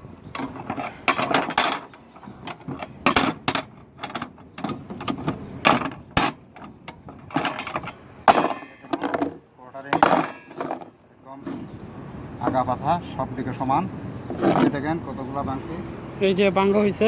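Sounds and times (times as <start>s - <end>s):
metal spring ring clanking: 0.3s - 11.8s.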